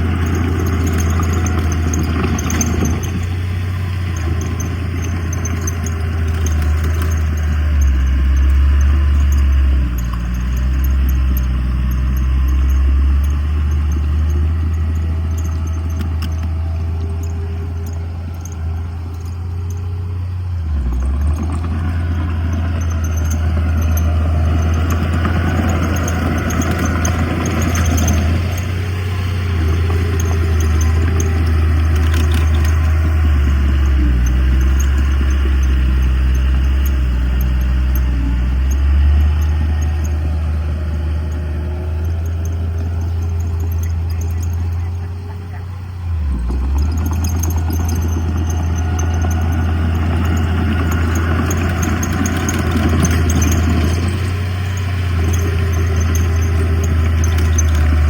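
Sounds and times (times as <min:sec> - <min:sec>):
heavy diesel engine under load: 0:00.0 - 0:58.0
light clatter: 0:00.0 - 0:58.0.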